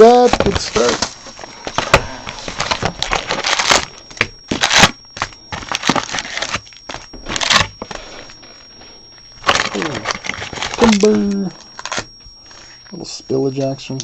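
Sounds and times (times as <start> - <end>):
plastic tearing: 0.0 - 8.4, 9.4 - 12.1
plastic wrap crinkling: 0.0 - 12.9.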